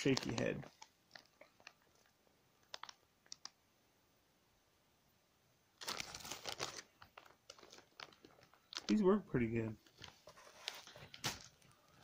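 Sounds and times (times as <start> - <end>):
clicks from plastic package: 0.0 - 3.6, 5.8 - 9.0
plastic packaging crinkling: 0.0 - 3.6, 5.8 - 12.0.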